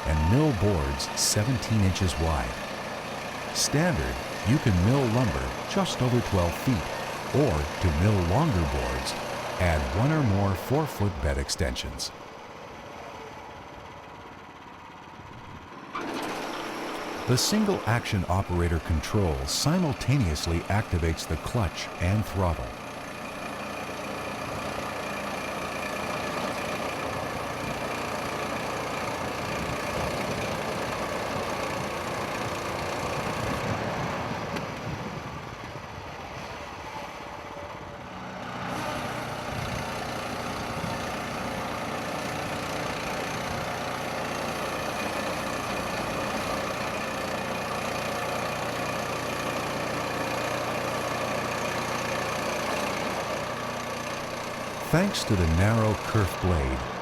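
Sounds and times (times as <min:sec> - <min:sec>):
band sawmill cutting log: 0:00.1 - 0:10.0, 0:38.5 - 0:56.0.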